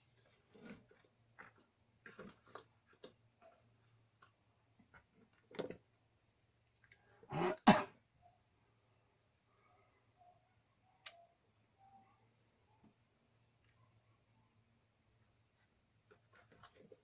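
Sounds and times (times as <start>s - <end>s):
man clearing his throat: 7.3s - 8.0s.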